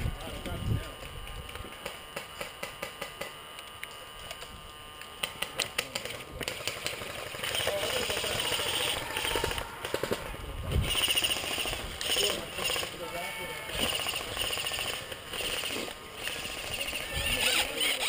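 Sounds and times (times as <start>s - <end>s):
airsoft guns firing: 6.4s - 10.3s, 10.9s - 13.0s, 13.7s - 16.8s.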